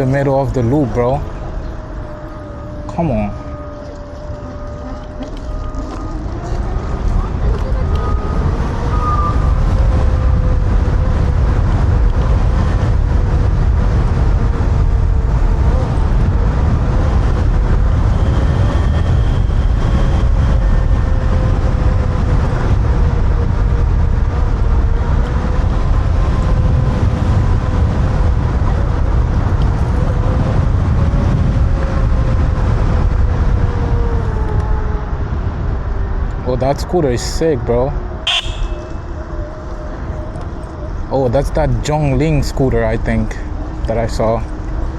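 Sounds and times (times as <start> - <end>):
wind rumble on microphone: 0.0 - 44.9.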